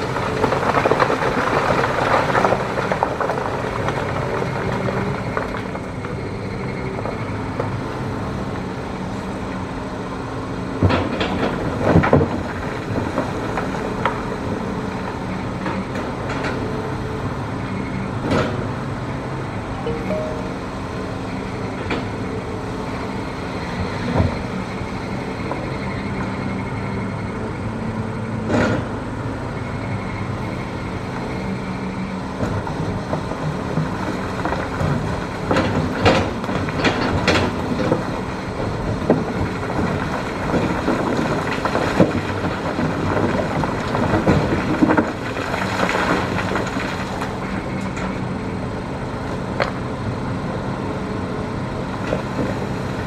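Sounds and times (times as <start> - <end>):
excavator diesel engine running: 0.0 - 53.0.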